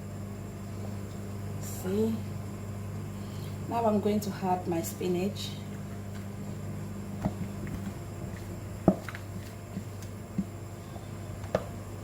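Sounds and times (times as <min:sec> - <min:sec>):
low hum: 0:00.0 - 0:12.0.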